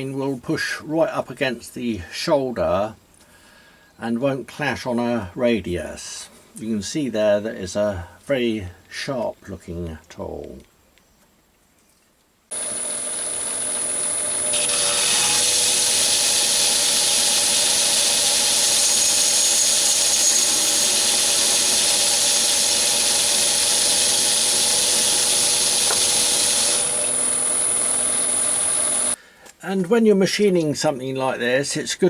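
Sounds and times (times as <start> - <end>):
cutting tool hiss: 12.5 - 29.2
metal lathe whining: 12.5 - 29.2.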